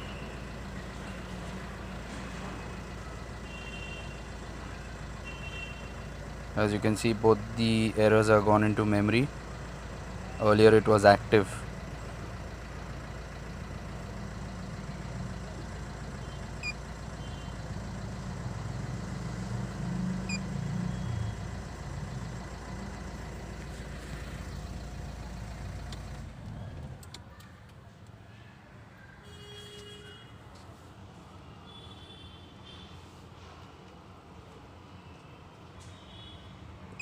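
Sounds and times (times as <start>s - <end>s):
car engine idling: 0.0s - 27.4s.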